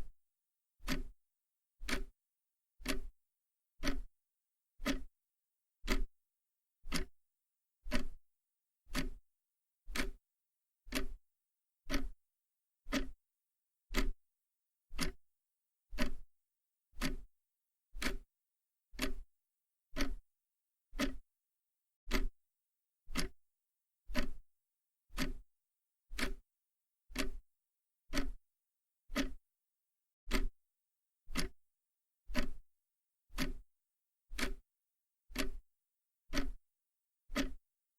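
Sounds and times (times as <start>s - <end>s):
mechanical clock ticking: 0.8s - 1.1s, 1.8s - 2.1s, 2.8s - 3.1s, 3.8s - 4.1s, 6.9s - 7.1s, 7.9s - 8.1s, 10.9s - 11.2s, 17.0s - 17.2s, 23.1s - 23.4s, 26.2s - 26.4s, 27.2s - 27.4s, 31.3s - 31.6s, 32.3s - 32.6s, 33.3s - 33.6s, 34.3s - 34.6s, 35.3s - 35.6s.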